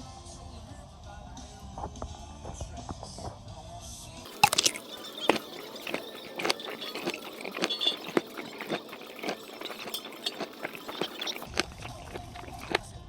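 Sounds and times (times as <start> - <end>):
person chewing food: 4.3 - 12.9.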